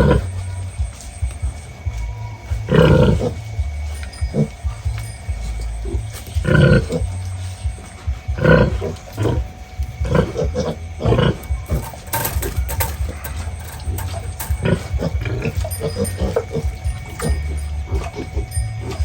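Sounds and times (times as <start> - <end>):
pigs squealing and grunting: 0.0 - 0.8, 1.9 - 19.0.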